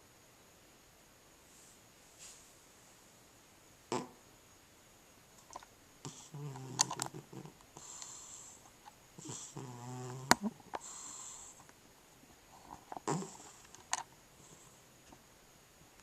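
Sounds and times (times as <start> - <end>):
cat snoring: 3.9 - 4.2, 6.0 - 8.6, 9.2 - 11.6, 12.6 - 13.7, 14.4 - 14.8.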